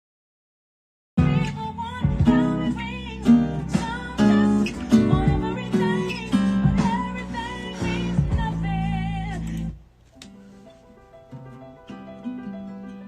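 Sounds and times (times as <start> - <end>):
acoustic guitar strumming chords: 1.2 - 9.7.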